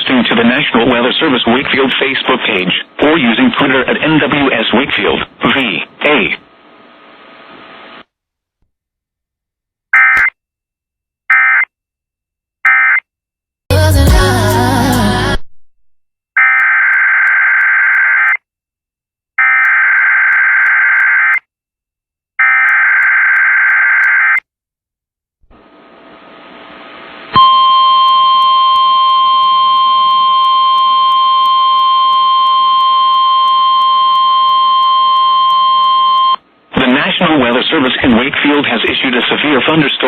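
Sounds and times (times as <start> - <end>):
radio static hiss: 0.0 - 8.0, 36.8 - 40.0
steady warning alarm tone: 27.4 - 36.4.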